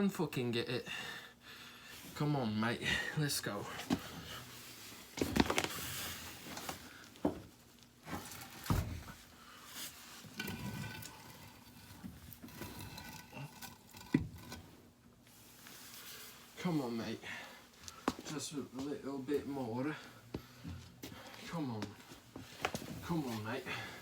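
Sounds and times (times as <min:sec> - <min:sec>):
washing machine scraping and rattling: 0:09.9 - 0:14.8.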